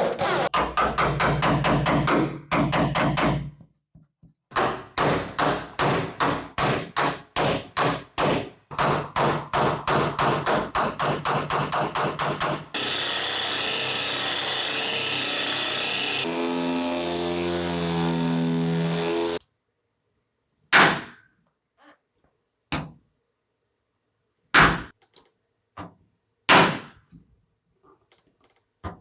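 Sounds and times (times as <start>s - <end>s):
power tool noise: 12.8s - 19.4s.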